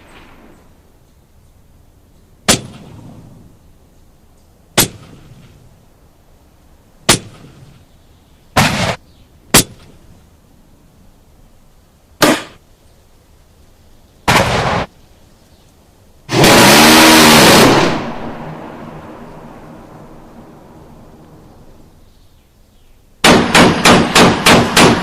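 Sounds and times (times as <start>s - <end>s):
gunfire bursts: 2.5s - 3.1s, 4.8s - 5.6s, 8.6s - 9.9s, 14.3s - 14.9s, 16.3s - 18.7s, 23.2s - 25.0s
gunshots: 2.5s - 3.2s, 4.8s - 5.6s, 7.1s - 7.8s, 8.6s - 10.0s, 12.2s - 12.6s, 14.3s - 14.9s, 16.3s - 19.3s, 23.2s - 25.0s
loud blast: 16.3s - 21.9s, 23.2s - 25.0s.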